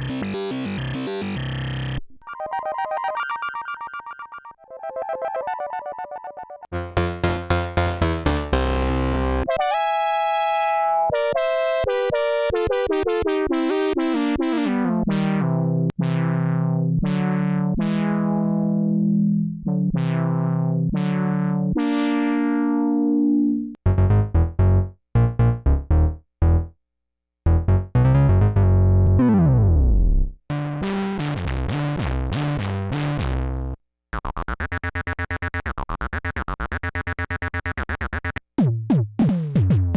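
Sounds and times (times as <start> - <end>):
synthesizer plucky notes: 2.2 - 26.7
staccato synth bass gliding down: 6.7 - 10.1, 23.8 - 26.7, 27.5 - 39.9.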